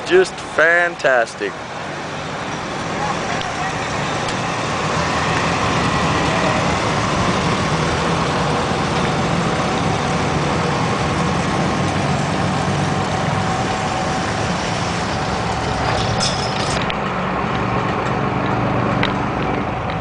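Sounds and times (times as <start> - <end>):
motor vehicle engines running: 0.0 - 20.0.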